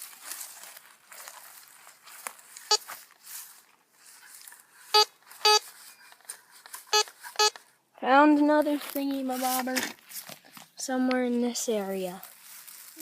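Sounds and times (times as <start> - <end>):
rustling of ground: 0.0 - 13.0
metal detector beeps: 2.7 - 2.9, 4.9 - 6.1, 6.9 - 7.6.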